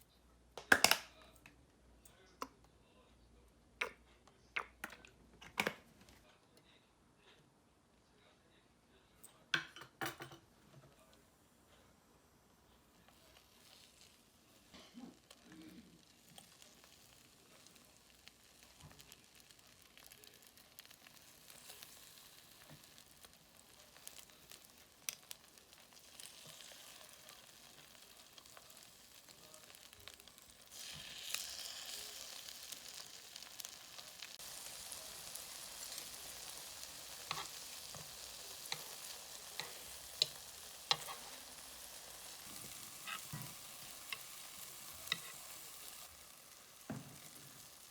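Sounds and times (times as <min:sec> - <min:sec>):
food sizzling in a frying pan: 0:12.9 - 0:47.9.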